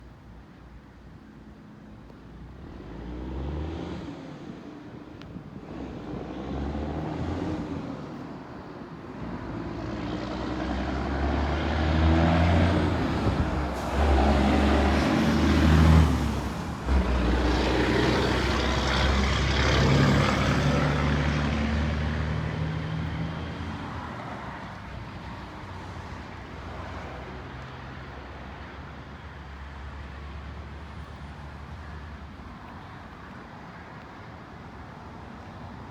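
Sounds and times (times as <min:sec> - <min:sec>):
vehicle engine passing by: 0:09.4 - 0:24.7.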